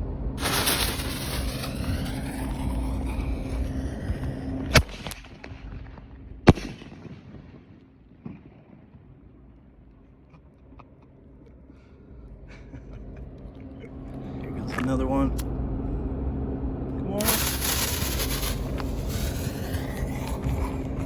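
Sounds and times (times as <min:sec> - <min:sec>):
firework hissing upward: 0:00.4 - 0:05.5, 0:17.2 - 0:21.0
firework bangs: 0:00.4 - 0:09.0, 0:17.2 - 0:21.0.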